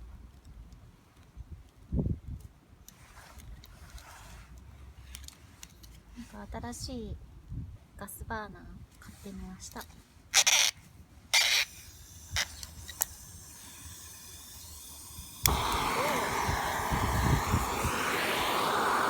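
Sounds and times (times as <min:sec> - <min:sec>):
gas torch hissing: 0:11.4 - 0:19.0
torch igniter clicks: 0:11.4 - 0:19.0.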